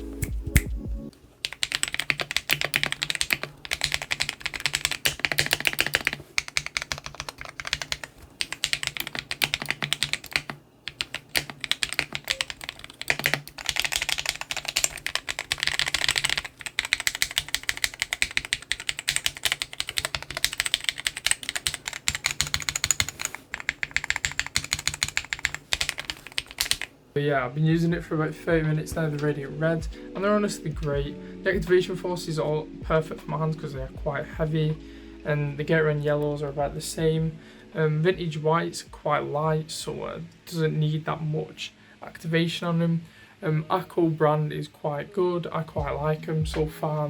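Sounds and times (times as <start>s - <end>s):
mechanical keyboard typing: 1.4s - 26.9s.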